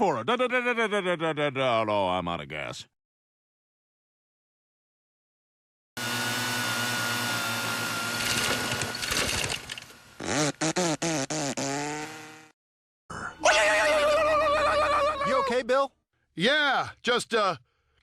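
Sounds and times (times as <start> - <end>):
chainsaw running: 6.0 - 12.6.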